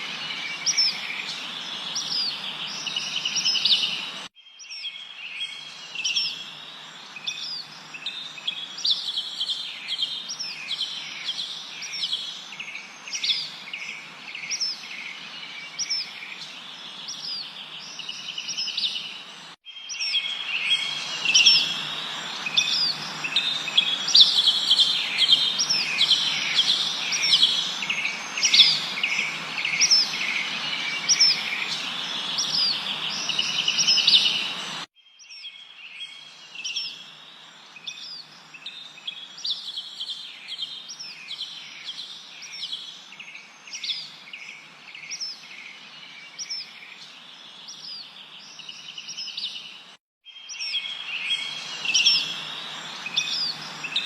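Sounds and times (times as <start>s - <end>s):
songbirds chirping and trilling: 0.0s - 54.0s
background hiss: 20.3s - 34.9s.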